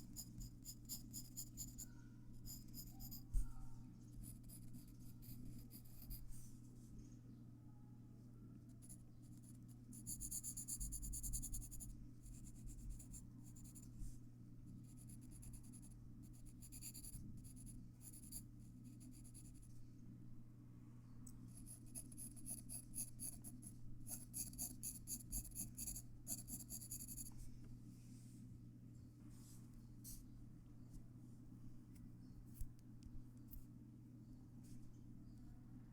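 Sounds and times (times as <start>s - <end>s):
pencil scratching on paper: 0.0s - 3.3s, 4.2s - 6.2s, 14.8s - 19.7s, 21.6s - 27.3s
steady low hum: 0.0s - 35.9s.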